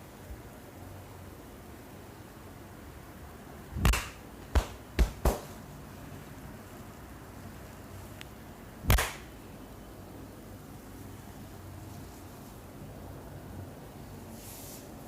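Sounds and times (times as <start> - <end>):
steady hiss: 0.0 - 15.0
percussive massage hits: 3.8 - 5.6, 8.9 - 9.3.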